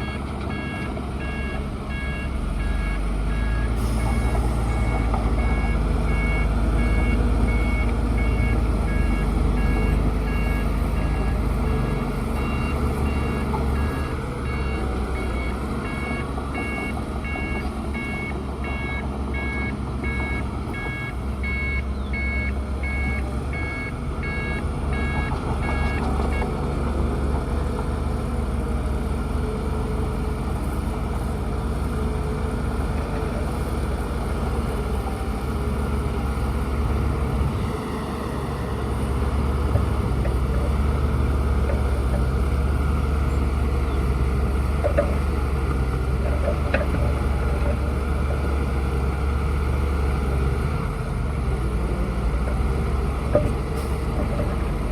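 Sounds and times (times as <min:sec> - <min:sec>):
reversing alarm beeping: 0:00.0 - 0:26.5
bulldozer diesel engine running: 0:00.0 - 0:54.9.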